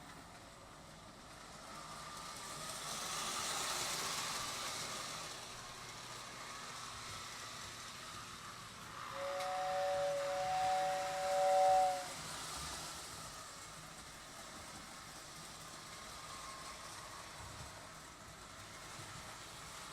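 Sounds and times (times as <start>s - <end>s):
toy train rushing noise: 0.0s - 19.9s
two-note train whistle: 9.1s - 12.2s.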